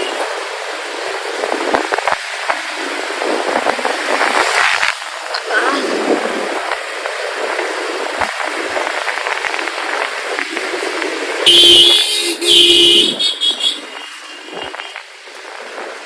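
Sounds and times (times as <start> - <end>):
wind and road noise: 0.0 - 16.0
vehicle horn blasts: 11.5 - 14.6.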